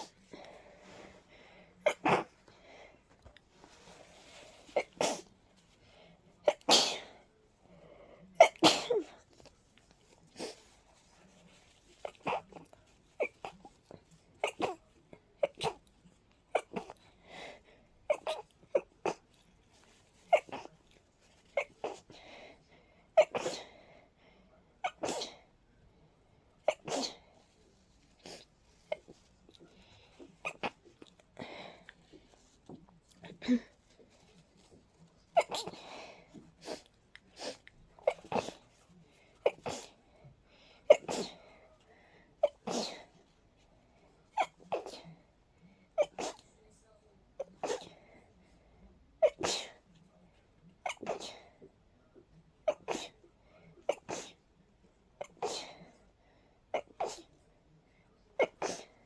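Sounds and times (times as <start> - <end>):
person sneezing: 4.3 - 5.3, 6.4 - 7.2, 8.4 - 9.2, 23.2 - 23.7, 24.8 - 25.4, 26.6 - 27.3, 33.2 - 38.6, 39.4 - 40.0, 40.8 - 41.5, 42.4 - 43.1, 46.0 - 46.4, 47.5 - 48.0, 49.2 - 49.8, 50.8 - 51.6, 52.7 - 53.2, 53.8 - 54.4, 55.2 - 55.9, 56.8 - 57.4, 58.4 - 59.0.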